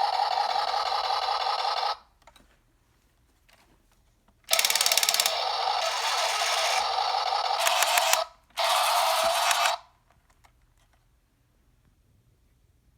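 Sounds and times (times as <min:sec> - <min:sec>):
toy mechanism clicking whir: 0:00.0 - 0:02.1, 0:04.5 - 0:09.9.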